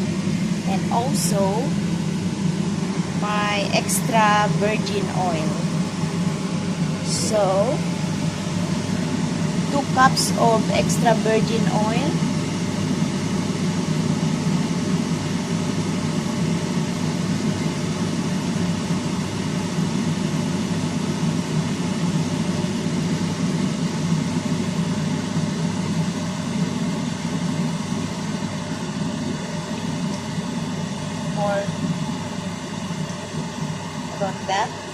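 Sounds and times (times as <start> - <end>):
fan motor humming: 0.0 - 34.9.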